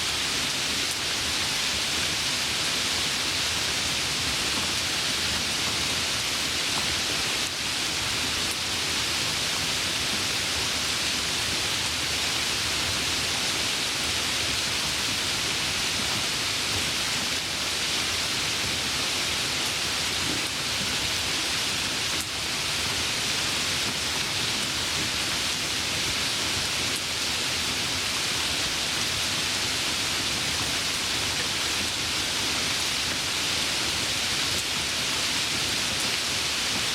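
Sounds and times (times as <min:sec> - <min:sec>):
light rain falling: 0:00.0 - 0:36.9.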